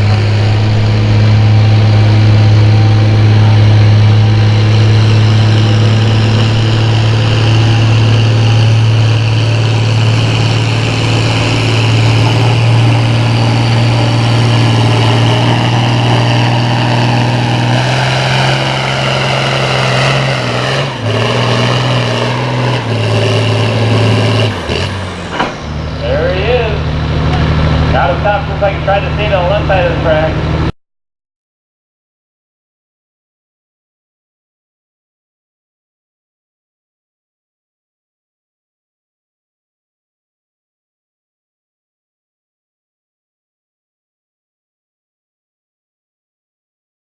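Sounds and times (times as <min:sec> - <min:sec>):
tractor engine under heavy load: 0:00.0 - 0:30.7.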